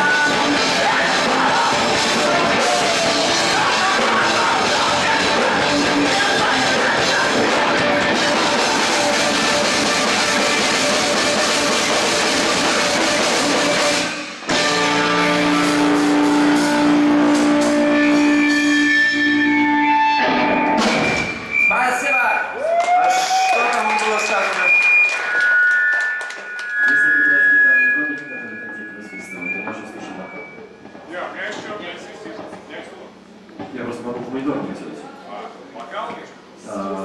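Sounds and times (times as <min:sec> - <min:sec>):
live rock band playing: 0:00.0 - 0:21.7.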